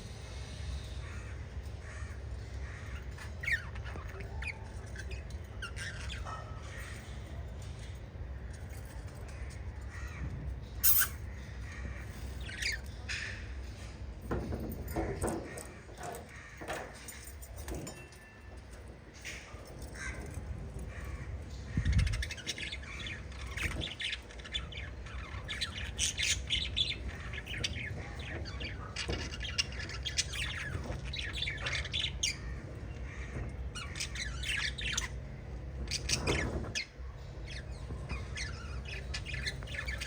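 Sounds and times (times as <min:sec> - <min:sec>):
budgerigars chirping and squawking: 0:01.0 - 0:07.4, 0:10.8 - 0:13.4, 0:20.8 - 0:35.2, 0:35.8 - 0:40.0.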